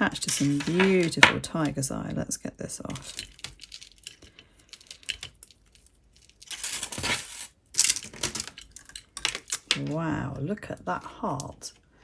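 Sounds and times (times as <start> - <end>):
beads clicking and clinking: 2.9 - 7.0.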